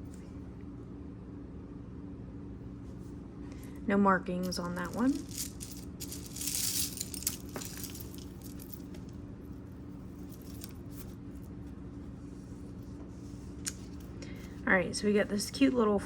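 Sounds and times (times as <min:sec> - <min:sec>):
steady low hum: 0:00.0 - 0:16.0
jewelry clinking and rustling: 0:04.4 - 0:09.1, 0:10.0 - 0:11.5.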